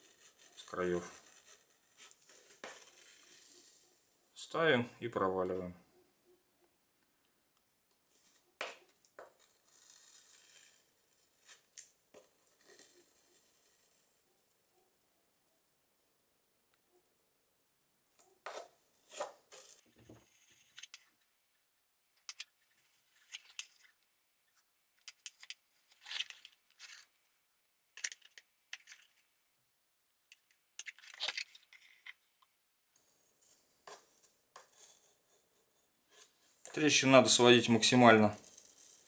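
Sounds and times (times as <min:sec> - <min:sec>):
soldering iron scratching plastic: 0:00.0 - 0:04.0, 0:08.1 - 0:14.2, 0:18.5 - 0:21.2, 0:22.2 - 0:27.2, 0:37.7 - 0:39.0.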